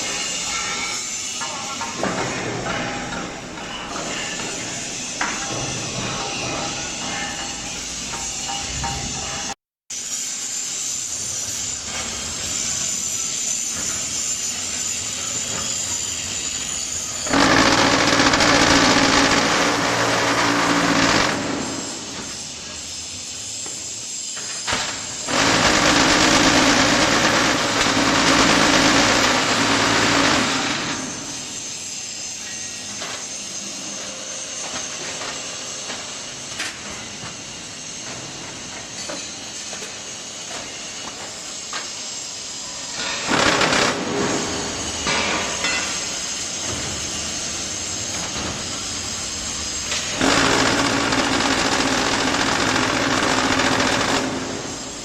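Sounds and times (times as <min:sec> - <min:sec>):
block machine running: 0:16.9 - 0:22.1, 0:25.2 - 0:31.4, 0:43.0 - 0:45.2, 0:49.7 - 0:55.0
machine clanks: 0:42.9 - 0:47.2.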